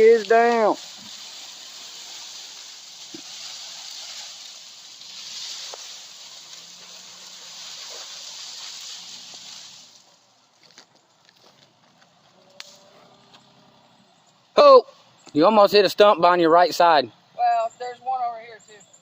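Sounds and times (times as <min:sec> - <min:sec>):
steady high hiss: 0:00.0 - 0:10.4.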